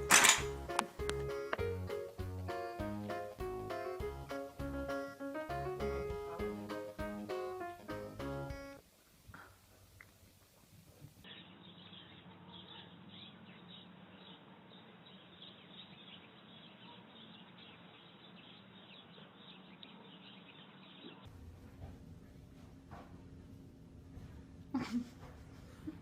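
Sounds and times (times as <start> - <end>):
small birds chirping: 11.2 - 21.3
low steady hum and hiss: 20.8 - 26.0.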